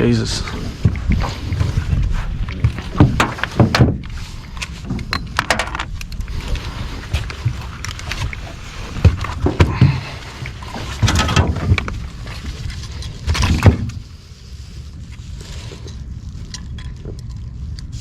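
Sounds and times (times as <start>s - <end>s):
steady low rumble: 0.0s - 18.0s
knocks and clunks on boat: 0.4s - 14.1s.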